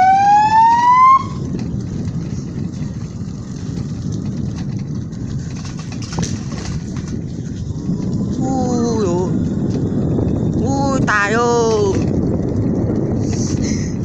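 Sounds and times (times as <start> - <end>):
electronic siren wailing: 0.0 - 1.4
wind buffeting microphone: 0.0 - 14.0.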